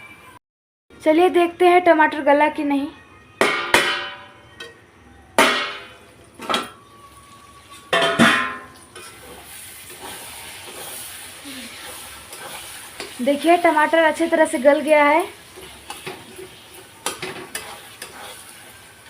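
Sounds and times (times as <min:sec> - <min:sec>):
metal cookware clanking: 0:05.4 - 0:06.9, 0:07.8 - 0:18.8
masala sizzling in a pan: 0:05.7 - 0:19.0.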